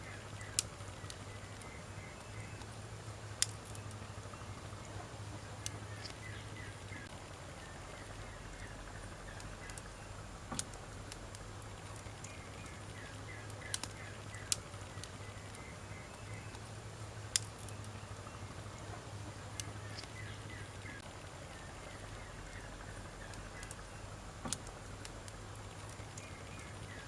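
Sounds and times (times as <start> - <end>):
low steady hum: 0.0 - 27.0
wood fire crackling: 0.0 - 27.0.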